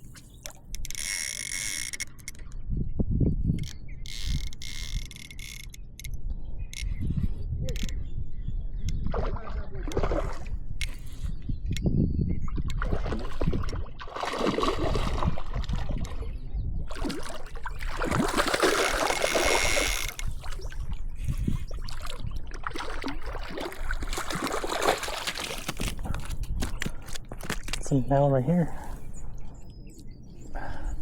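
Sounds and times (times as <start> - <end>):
water splashing and trickling: 9.0 - 11.3, 12.5 - 29.4.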